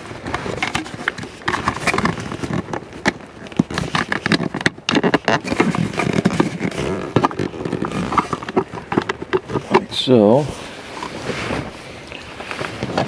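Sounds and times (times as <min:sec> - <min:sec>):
plastic parts clicking and scraping: 0:00.0 - 0:10.3.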